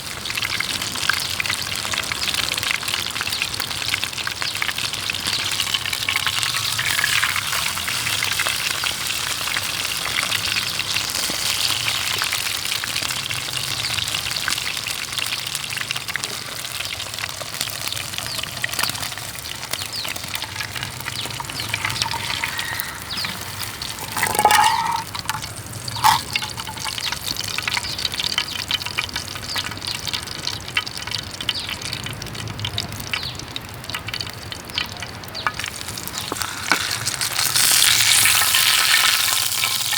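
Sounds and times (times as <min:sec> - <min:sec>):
food sizzling in a frying pan: 0:00.0 - 0:39.9.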